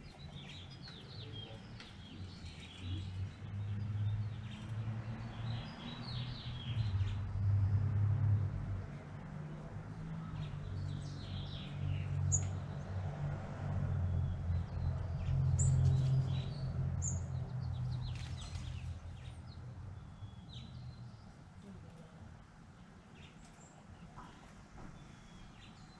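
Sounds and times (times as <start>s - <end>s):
birds chirping: 0.0s - 7.2s, 14.2s - 22.1s.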